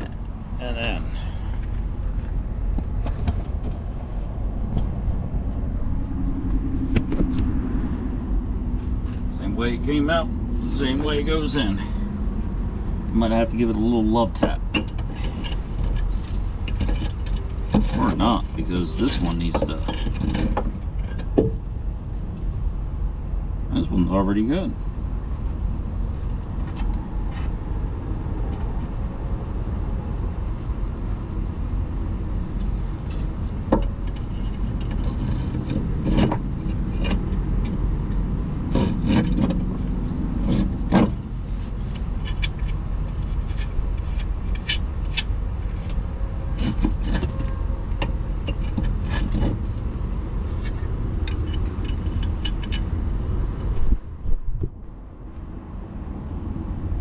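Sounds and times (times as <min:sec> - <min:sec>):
low rumble: 0:00.0 - 0:57.0.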